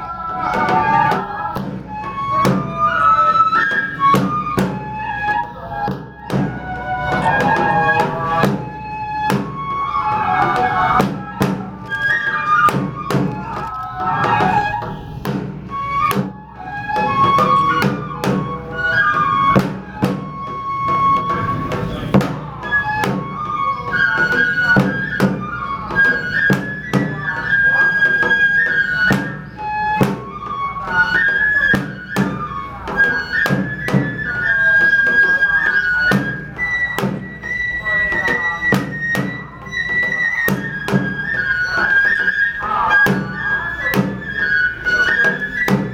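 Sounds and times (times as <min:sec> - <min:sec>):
bamboo flute melody: 0:00.0 - 0:45.9.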